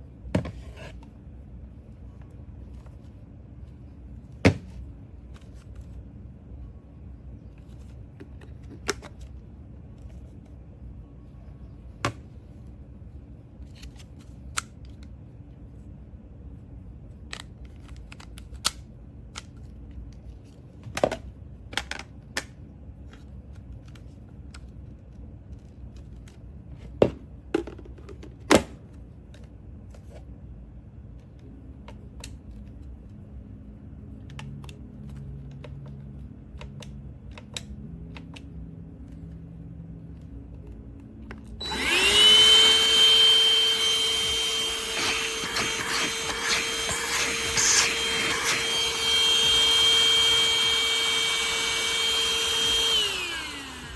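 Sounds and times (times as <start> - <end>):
handheld vacuum motor whine: 41.6 - 53.9.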